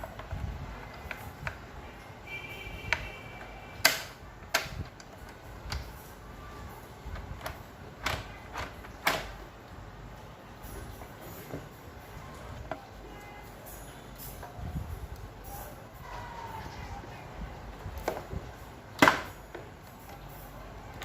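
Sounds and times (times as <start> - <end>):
hard parts knocking and clattering: 7.0 - 9.6, 18.0 - 21.0.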